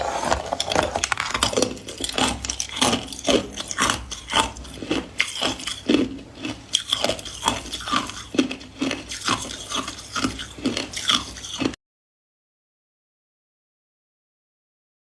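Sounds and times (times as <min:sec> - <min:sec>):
ice cubes being chewed: 0:00.0 - 0:11.8.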